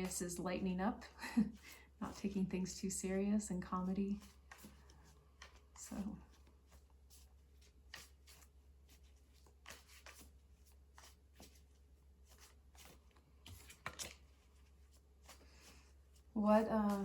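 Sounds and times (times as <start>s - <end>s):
cards being shuffled: 4.1s - 17.0s.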